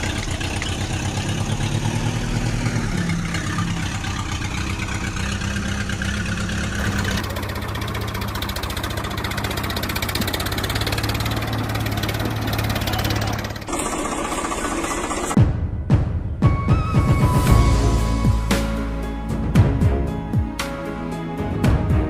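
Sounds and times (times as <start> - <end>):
engine idling: 0.0 - 15.4
lower-pitched engine running: 0.0 - 15.4.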